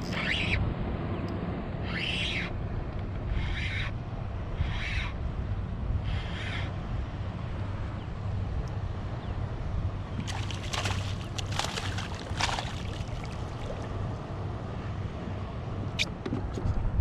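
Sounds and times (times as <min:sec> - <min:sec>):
water lapping against kayak hull: 0:10.1 - 0:14.2
water splashing: 0:10.1 - 0:14.3.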